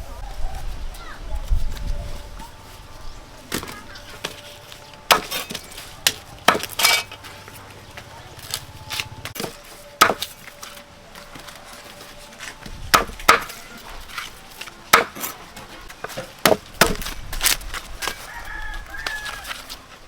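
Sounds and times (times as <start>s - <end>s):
rooster crowing: 18.0s - 19.8s.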